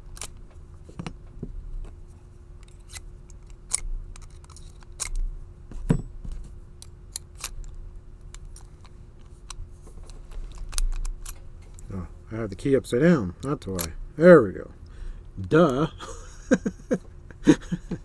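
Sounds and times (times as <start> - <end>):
key scraping in padlock: 2.6 - 5.2, 6.8 - 11.9, 13.4 - 14.0.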